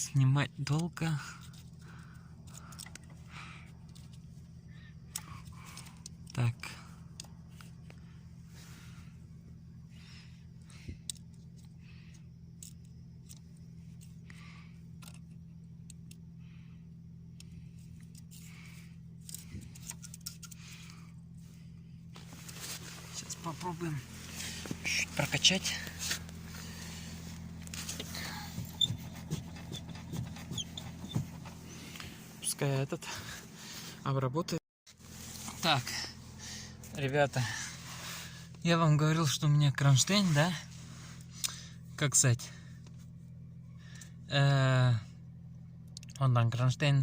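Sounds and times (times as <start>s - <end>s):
steady low hum: 0.0s - 47.0s
clutch pedal squeaks and clicks: 22.1s - 32.5s.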